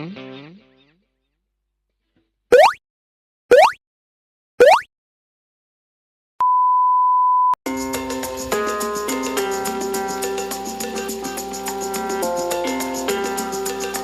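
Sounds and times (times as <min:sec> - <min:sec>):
guitar-backed music: 0:00.0 - 0:00.9, 0:07.7 - 0:14.0
rising electronic chirps: 0:02.5 - 0:02.8.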